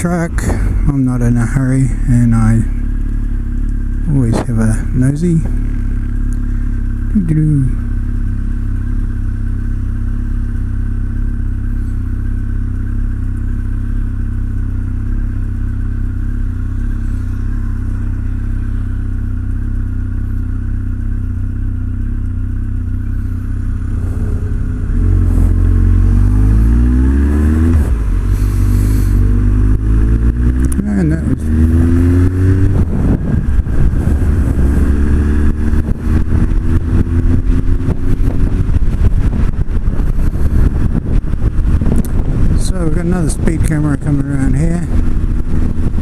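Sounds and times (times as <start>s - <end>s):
motorcycle engine revving: 0.0s - 46.0s.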